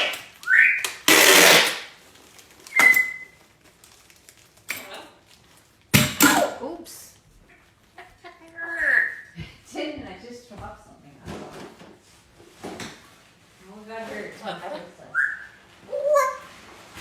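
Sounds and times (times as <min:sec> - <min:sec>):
parrot whistling: 0:00.0 - 0:01.7, 0:02.7 - 0:03.4, 0:08.6 - 0:09.4, 0:15.1 - 0:16.4
parrot harsh call: 0:00.0 - 0:01.8, 0:08.6 - 0:09.4.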